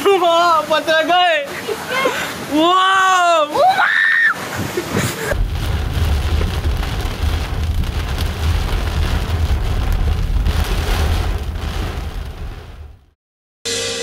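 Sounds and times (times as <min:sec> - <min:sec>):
rain: 0:00.0 - 0:13.2
wind buffeting microphone: 0:04.4 - 0:12.7.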